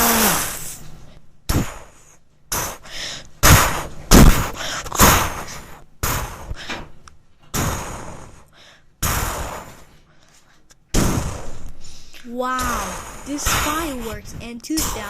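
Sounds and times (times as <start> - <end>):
fireworks bangs: 12.5 - 15.0.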